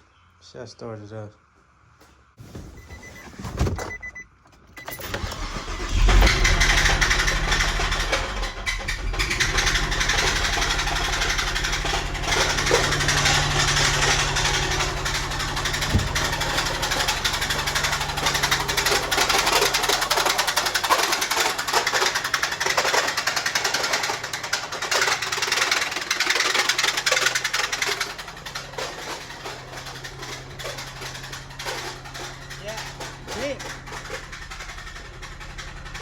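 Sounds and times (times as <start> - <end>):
engine with metallic rod knock: 9.2 - 28.3.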